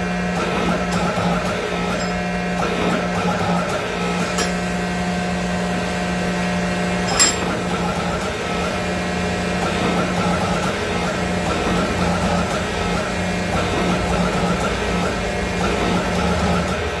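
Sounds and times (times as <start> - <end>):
low machine hum: 0.0 - 17.0
sharp metallic clink: 7.1 - 7.5.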